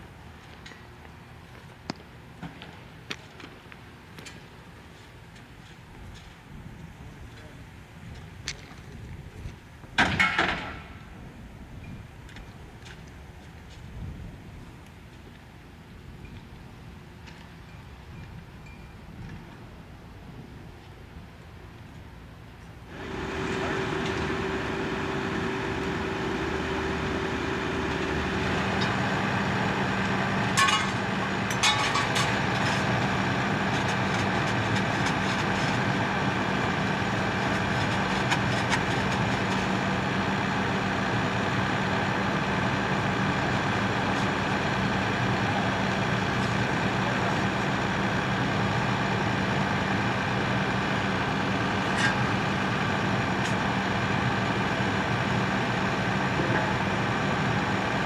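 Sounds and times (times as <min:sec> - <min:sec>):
engine idling: 0:22.9 - 0:58.0.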